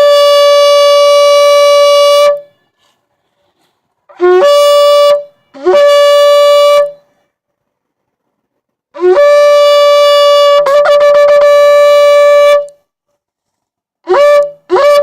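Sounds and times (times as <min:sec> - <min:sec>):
shofar blast: 0:00.0 - 0:02.6, 0:04.1 - 0:07.1, 0:08.9 - 0:12.8, 0:14.0 - 0:15.0.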